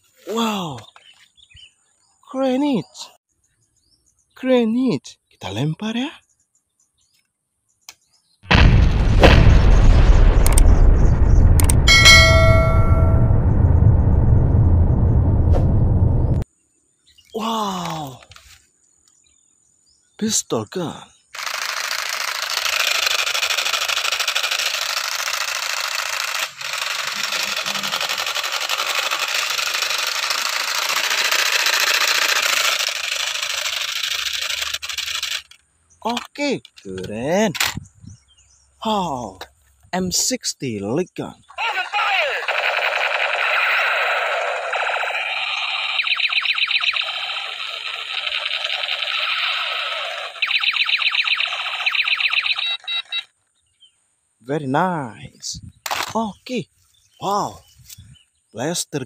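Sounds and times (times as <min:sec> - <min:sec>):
toy pistol rapid rattling buzz: 0:21.3 - 0:35.7, 0:44.3 - 0:53.2
rapid electronic gun shots: 0:42.4 - 0:52.7.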